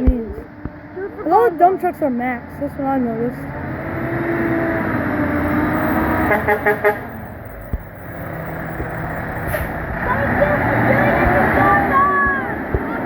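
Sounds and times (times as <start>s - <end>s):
steady traffic noise: 0.0s - 13.0s
truck passing: 0.0s - 13.0s
short horn toots: 6.2s - 7.2s.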